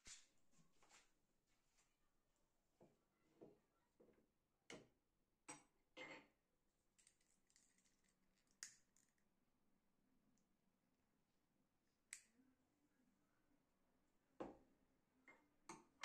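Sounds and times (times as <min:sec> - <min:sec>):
small objects clicking and knocking: 0:07.0 - 0:09.2.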